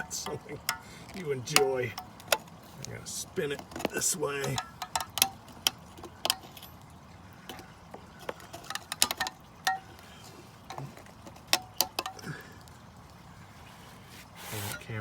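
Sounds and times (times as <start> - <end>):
metallic clicking and clinking: 0.0 - 6.9, 8.3 - 10.0.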